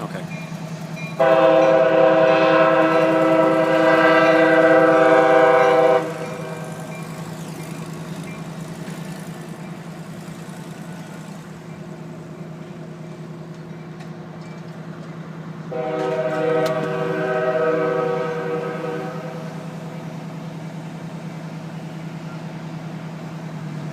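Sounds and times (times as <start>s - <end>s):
truck engine and hydraulics humming: 0.0s - 23.9s
horn-like chord: 1.2s - 6.7s, 15.7s - 19.6s.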